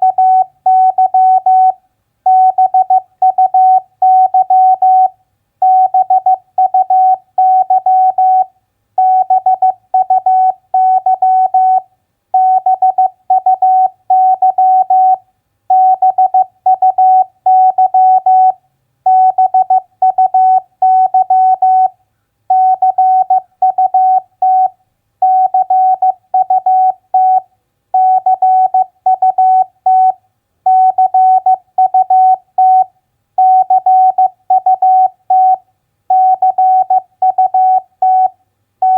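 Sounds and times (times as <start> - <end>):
morse code beeps: 9.0 - 11.8, 12.4 - 21.9, 22.5 - 27.4, 33.4 - 38.9.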